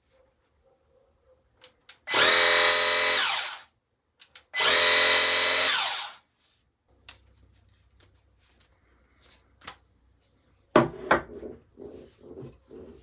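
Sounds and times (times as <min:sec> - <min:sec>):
electric motor whining: 0:02.1 - 0:03.6, 0:04.6 - 0:06.2.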